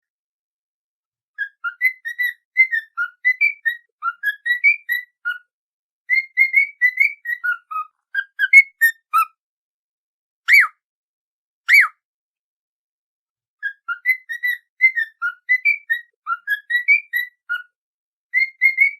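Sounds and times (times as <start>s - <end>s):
up-and-down whistles: 1.4s - 5.5s, 6.1s - 9.3s, 10.5s - 10.8s, 11.7s - 12.0s, 13.6s - 17.7s, 18.4s - 18.9s.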